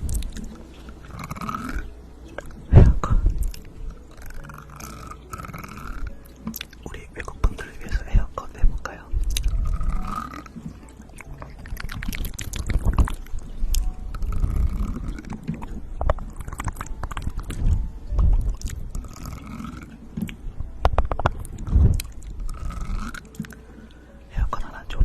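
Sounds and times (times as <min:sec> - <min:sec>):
wet mouth clicks and smacks: 0:00.0 - 0:00.6, 0:03.4 - 0:04.4, 0:06.4 - 0:07.6, 0:09.2 - 0:10.1, 0:11.1 - 0:13.9, 0:14.9 - 0:19.1, 0:20.2 - 0:23.6.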